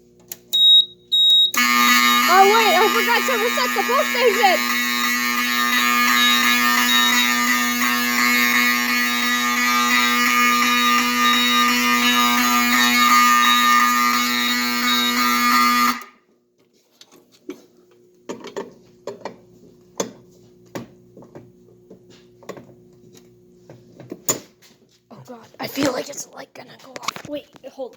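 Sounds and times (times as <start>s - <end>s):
fire alarm horn buzzing: 0.6s - 16.2s.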